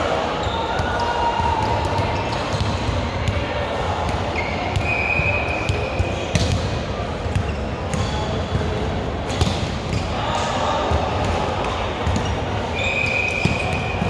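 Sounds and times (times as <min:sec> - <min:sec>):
murmur of voices echoing: 0:00.0 - 0:14.0
volleyball slaps: 0:05.6 - 0:06.8, 0:09.3 - 0:12.3.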